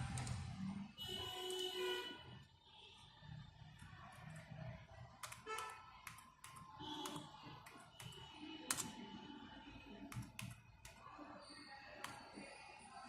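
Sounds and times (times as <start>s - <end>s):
computer keys clicking: 0.0s - 0.4s, 5.1s - 9.0s, 10.0s - 11.2s, 12.0s - 12.4s.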